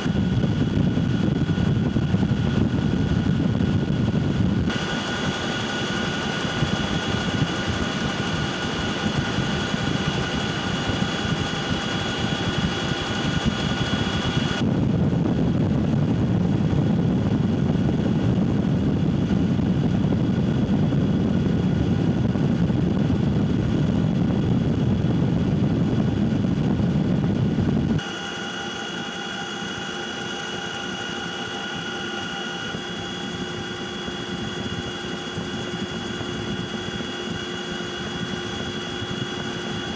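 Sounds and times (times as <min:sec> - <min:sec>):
helicopter rotor rumble: 0:00.0 - 0:39.9
helicopter turbine whine: 0:00.0 - 0:39.9.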